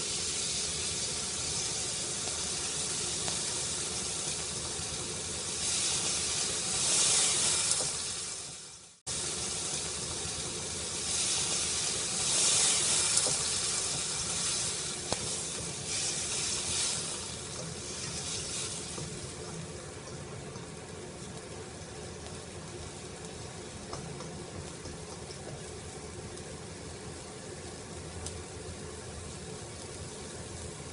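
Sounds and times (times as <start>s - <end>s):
food sizzling in a pan: 0.0s - 30.9s.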